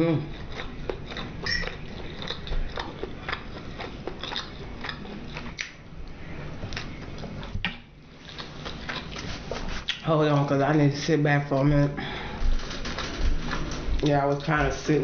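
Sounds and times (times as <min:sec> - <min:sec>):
person chewing food: 0:00.0 - 0:10.8, 0:11.7 - 0:15.0
wet mouth smacks: 0:05.6 - 0:05.8.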